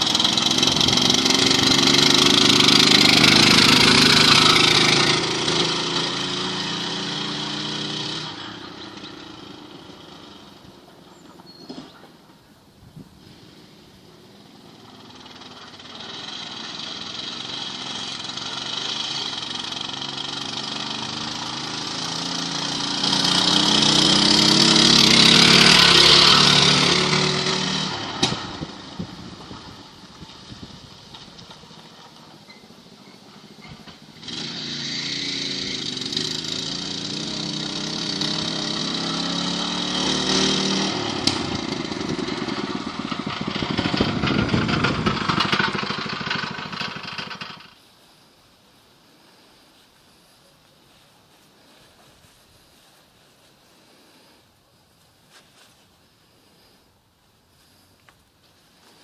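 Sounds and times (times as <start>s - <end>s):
small tractor engine running: 0.0s - 12.0s, 13.2s - 47.9s.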